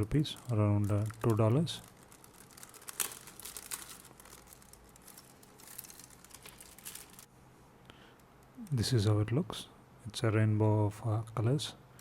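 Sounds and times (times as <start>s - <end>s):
plastic packaging crinkling: 0.0s - 7.3s.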